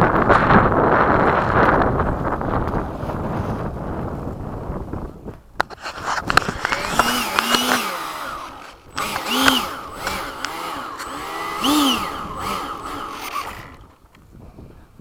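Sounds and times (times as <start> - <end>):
electric ducted-fan motor whining: 5.8 - 14.1.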